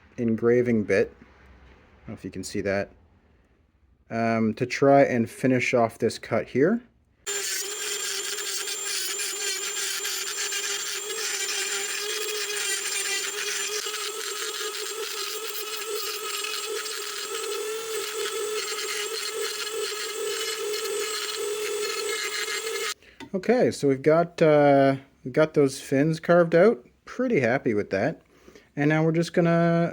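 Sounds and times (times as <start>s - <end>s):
bit rasping in wood: 7.3s - 23.0s
rotary tool motor whine: 7.3s - 23.0s.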